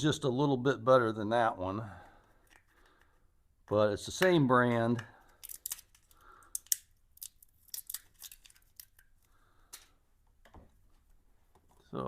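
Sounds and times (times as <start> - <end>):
small hard parts clicking: 5.0 - 9.9.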